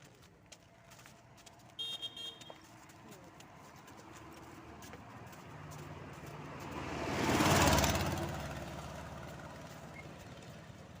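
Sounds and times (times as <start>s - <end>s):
motor vehicle driving past: 3.4s - 11.0s.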